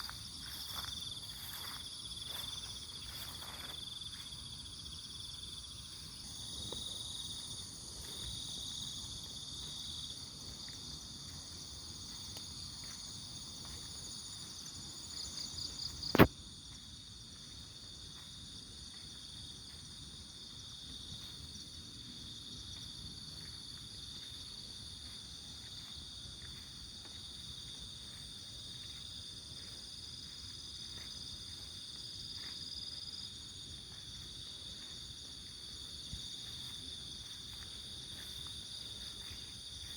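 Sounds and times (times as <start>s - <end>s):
crickets and insects trilling: 0.0s - 39.9s
sharp loud click: 16.1s - 16.3s.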